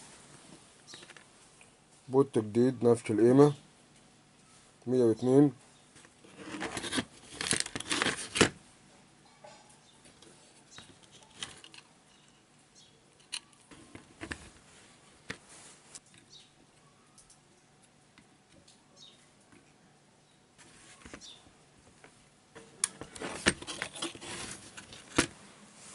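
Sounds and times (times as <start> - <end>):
rustling and scraping of parts: 0.0 - 2.2, 3.4 - 16.5, 20.6 - 25.9.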